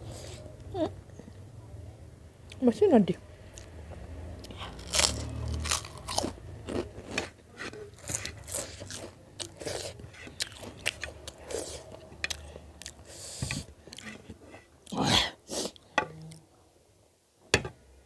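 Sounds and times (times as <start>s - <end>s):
chewing hard crunchy food: 4.4s - 14.2s.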